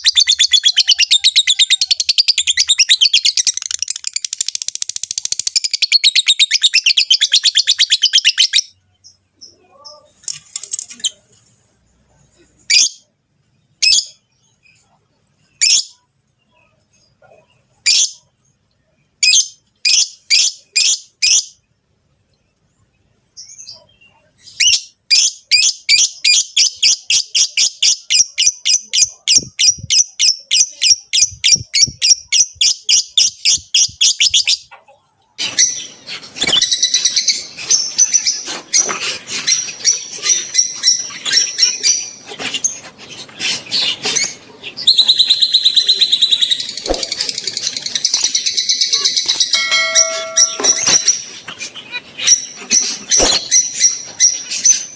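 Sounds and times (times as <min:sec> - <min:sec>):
birds chattering: 0:23.4 - 0:54.9
birds chirping rapidly: 0:35.4 - 0:54.9.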